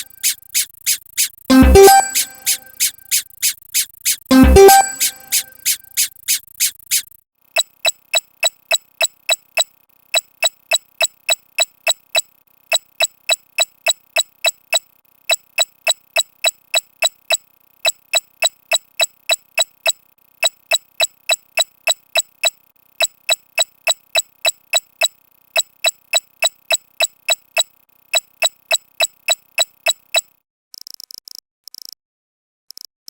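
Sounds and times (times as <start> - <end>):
squeaky sound effect: 0.0 - 7.0.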